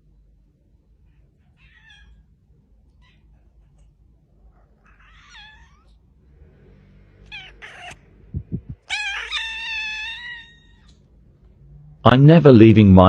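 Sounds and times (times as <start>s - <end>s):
kitten meowing: 1.4s - 3.9s, 4.6s - 6.0s, 7.2s - 11.1s
low thuds: 8.2s - 8.9s.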